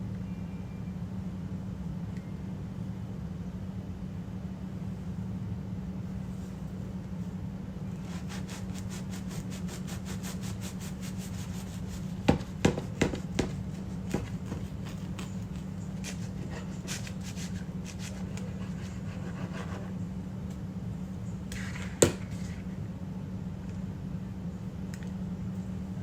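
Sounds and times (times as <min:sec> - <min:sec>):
steady low hum: 0:00.0 - 0:26.0
bread knife sawing crust: 0:08.0 - 0:19.9.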